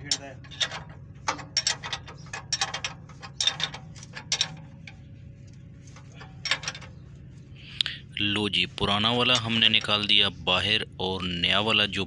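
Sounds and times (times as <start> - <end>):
metal tools clicking and clanking: 0.0 - 5.0, 5.9 - 7.0, 9.1 - 10.2
steady low hum: 0.0 - 12.0.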